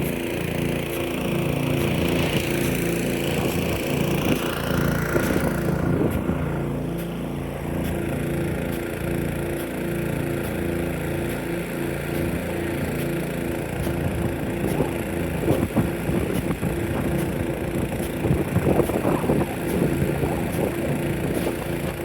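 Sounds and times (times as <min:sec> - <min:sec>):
big-gun sprinkler running: 0:00.0 - 0:22.0
pulsing engine drone: 0:00.0 - 0:22.0
wind buffeting microphone: 0:01.9 - 0:06.6, 0:13.8 - 0:22.0.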